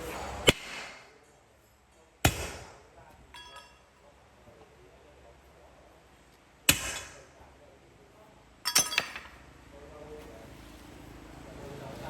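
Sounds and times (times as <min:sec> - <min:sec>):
metal clanking on metal: 0:03.2 - 0:03.9.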